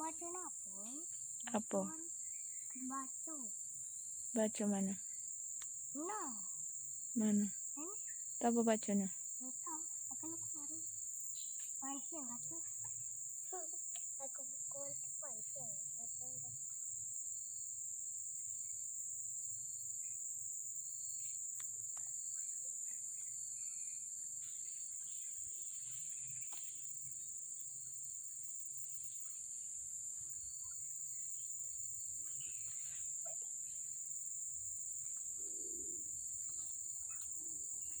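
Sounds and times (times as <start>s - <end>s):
high-pitched insect chorus: 0.0s - 38.0s
faint ticks: 5.6s - 6.3s, 13.7s - 15.0s, 21.2s - 23.4s, 36.4s - 38.0s.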